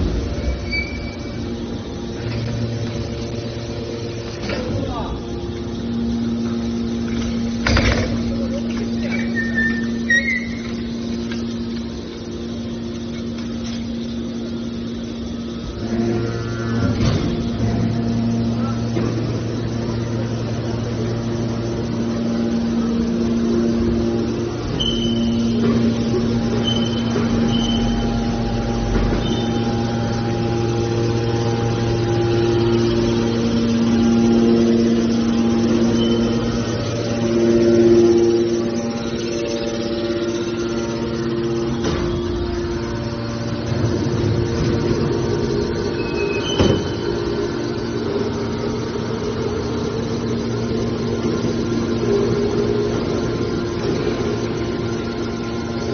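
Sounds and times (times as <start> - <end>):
high squeal: 0.0 - 4.2, 8.6 - 11.6, 23.2 - 55.9
baler power unit humming: 0.0 - 55.9.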